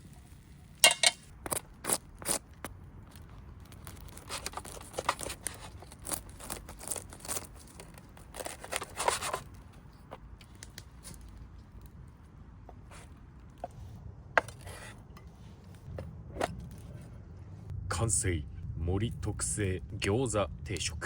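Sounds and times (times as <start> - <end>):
rustling and crinkling handling: 2.6 - 17.1.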